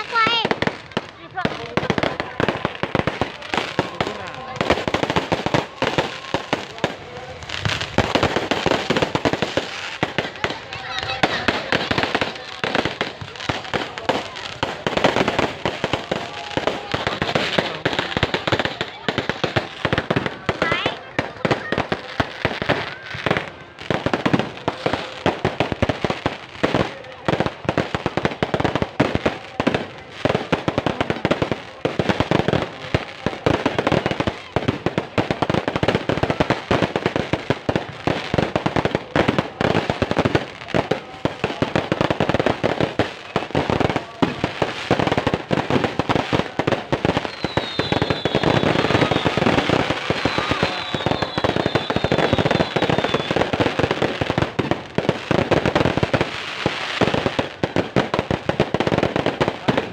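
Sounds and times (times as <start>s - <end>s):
fireworks bangs and crackling: 0.0s - 59.9s
high falling whistles: 47.3s - 49.4s.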